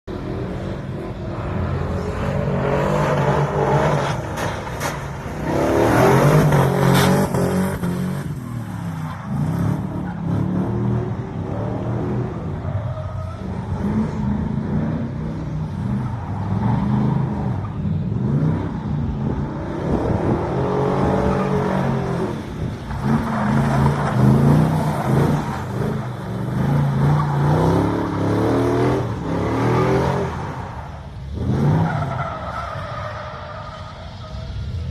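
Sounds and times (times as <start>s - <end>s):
truck engine revving hard: 5.4s - 8.4s.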